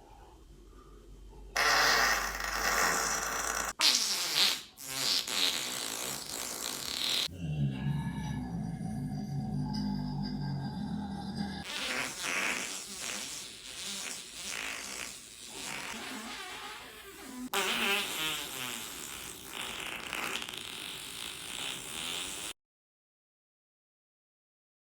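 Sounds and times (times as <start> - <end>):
man farting: 1.6 - 7.3, 11.6 - 22.6.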